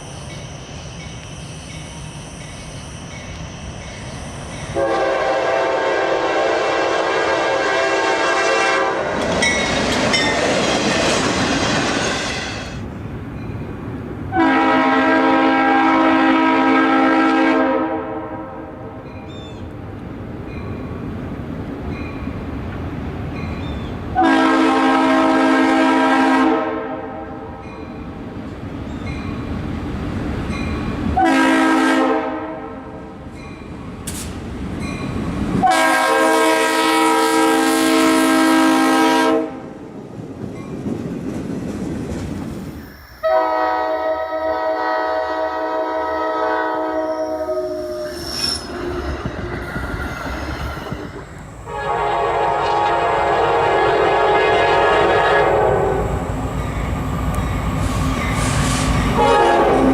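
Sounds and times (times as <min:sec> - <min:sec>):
train rumbling and clacking: 0:00.0 - 0:59.9
locomotive air horn blasts: 0:04.8 - 0:09.1, 0:14.3 - 0:18.9, 0:24.2 - 0:27.5, 0:31.2 - 0:33.0, 0:35.6 - 0:39.7, 0:43.2 - 0:49.6, 0:50.9 - 0:56.2, 0:59.1 - 0:59.9.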